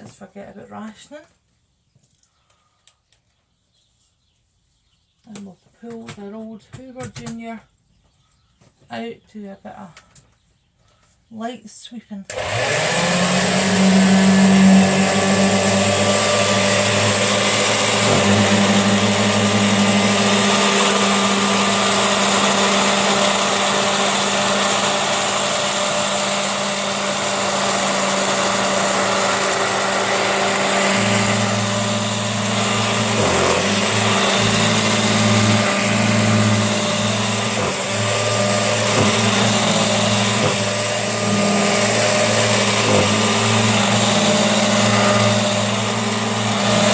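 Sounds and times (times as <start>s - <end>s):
vacuum cleaner running: 12.3s - 46.9s.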